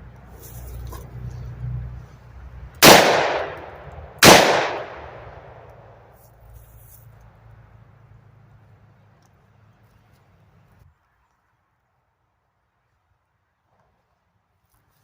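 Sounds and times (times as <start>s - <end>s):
revolver shots echoing: 2.8s - 5.8s.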